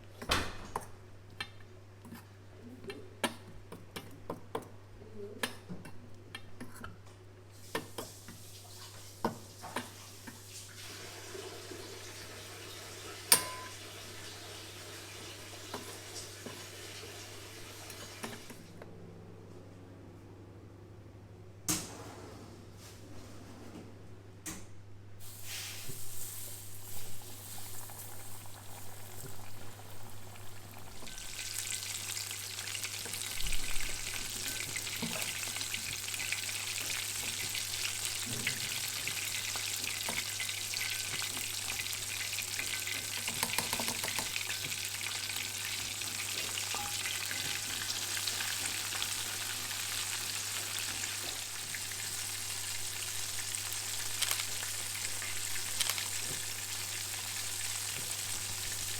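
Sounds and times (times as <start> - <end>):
chicken deep-frying in oil: 7.5 - 18.5, 25.2 - 58.9.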